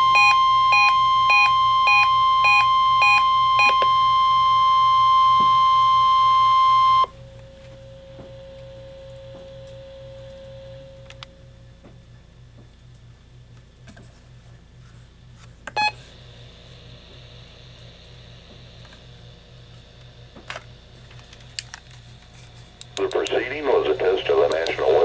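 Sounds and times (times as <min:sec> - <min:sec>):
steady high alarm tone: 0:00.0 - 0:11.8
faint hum and hiss: 0:00.0 - 0:25.0.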